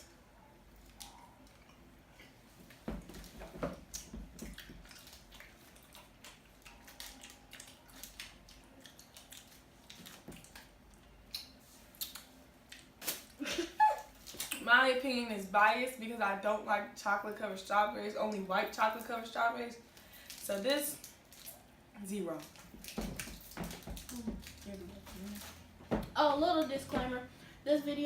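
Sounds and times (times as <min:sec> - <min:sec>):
people chewing candy: 0:00.7 - 0:14.6, 0:19.9 - 0:25.8
wet squishy mouth sounds: 0:03.8 - 0:13.4.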